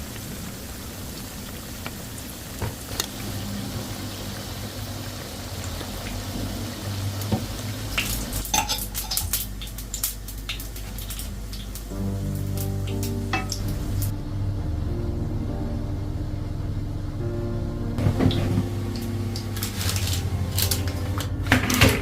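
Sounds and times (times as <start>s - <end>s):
food sizzling in a frying pan: 0.0s - 14.1s.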